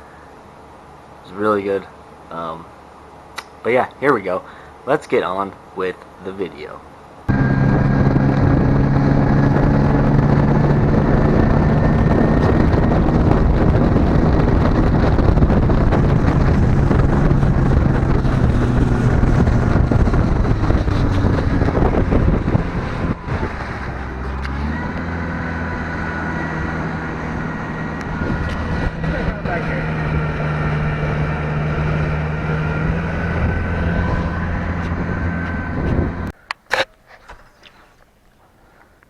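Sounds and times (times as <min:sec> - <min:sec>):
outboard motor drone: 0:07.1 - 0:36.3
wind on microphone: 0:07.3 - 0:36.4.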